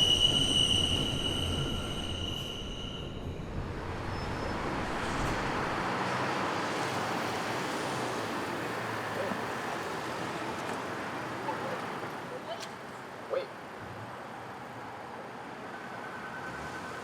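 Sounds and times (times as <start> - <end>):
train wheels squealing: 0.0 - 5.8
train rumble and hiss: 0.0 - 12.0.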